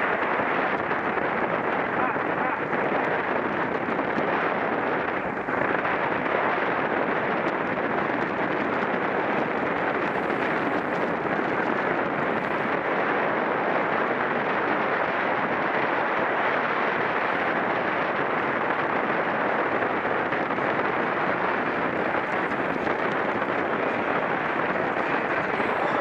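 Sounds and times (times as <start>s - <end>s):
wind rushing on microphone: 0.0s - 26.0s.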